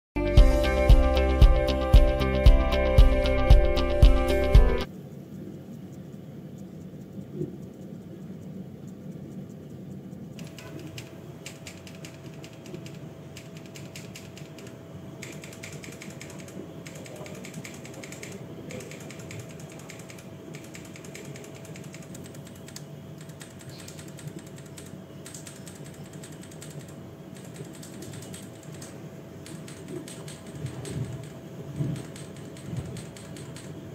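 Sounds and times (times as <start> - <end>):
faint steady hum: 0.2 - 33.9
mechanical keyboard typing clacks: 8.8 - 33.9.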